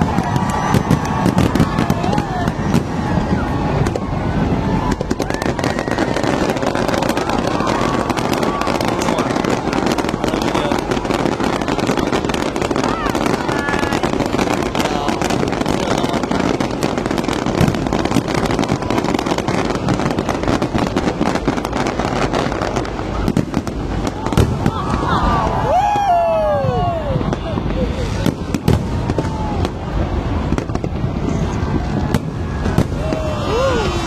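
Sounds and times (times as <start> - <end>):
dense crackling pops: 0.0 - 26.2
faint voices: 0.0 - 34.0.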